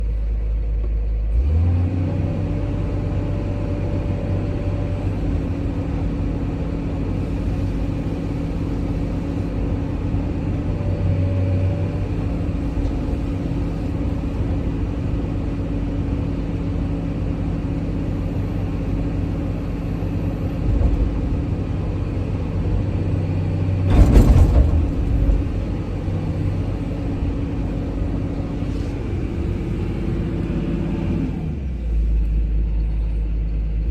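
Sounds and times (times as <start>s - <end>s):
excavator diesel engine running: 0.0s - 33.9s
loud clatter: 23.8s - 27.4s.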